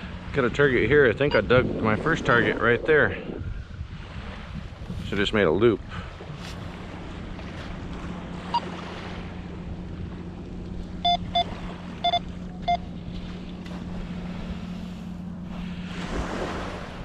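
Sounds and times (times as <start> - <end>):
wind on microphone: 0.0 - 8.6
metal detector beeps: 11.0 - 12.9.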